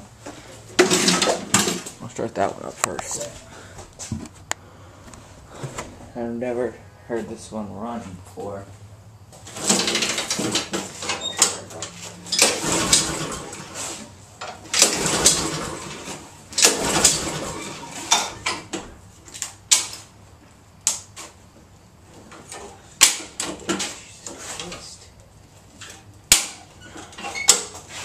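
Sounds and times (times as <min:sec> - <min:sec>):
lawn mower engine cranking: 0:00.8 - 0:03.3, 0:09.4 - 0:19.9.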